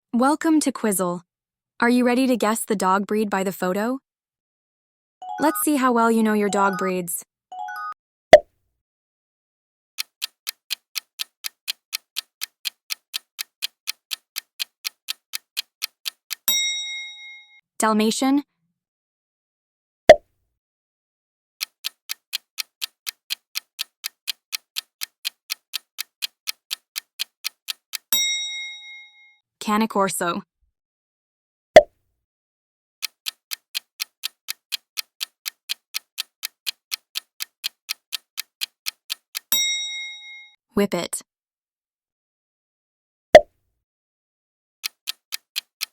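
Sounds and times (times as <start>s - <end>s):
clock ticking: 10.0s - 17.2s, 21.6s - 28.8s, 33.0s - 40.4s, 44.8s - 45.9s.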